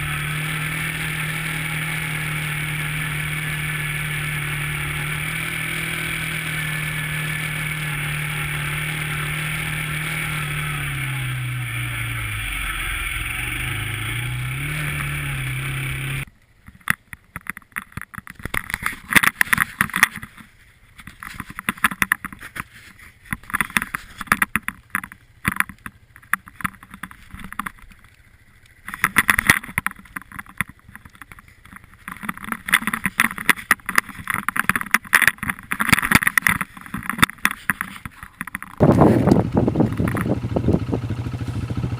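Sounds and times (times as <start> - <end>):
car engine and road noise: 0.0 - 41.9
wind buffeting microphone: 38.8 - 41.9.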